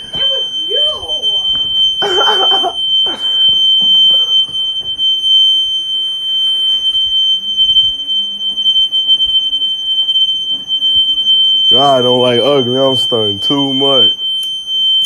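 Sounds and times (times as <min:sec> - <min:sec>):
smoke detector tone: 0:00.0 - 0:15.0.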